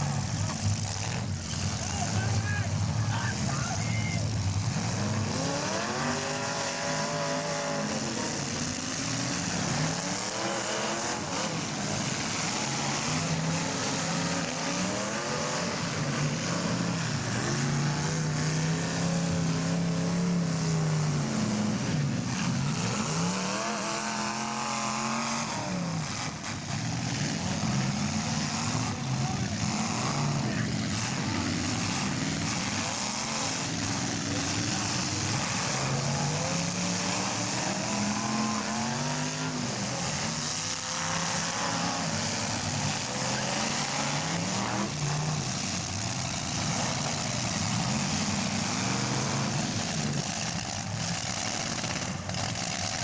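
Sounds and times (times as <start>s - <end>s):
car engines revving: 0.0s - 53.0s.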